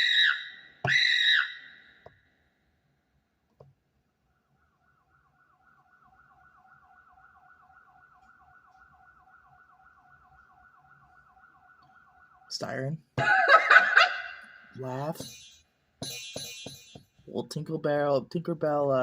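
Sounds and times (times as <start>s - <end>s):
electronic siren wail: 0.0s - 2.1s, 4.2s - 13.0s.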